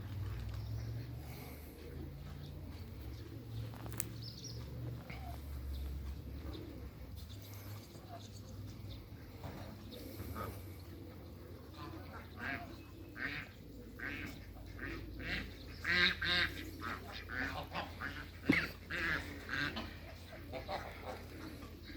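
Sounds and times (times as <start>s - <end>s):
ducks quacking: 9.4s - 21.9s.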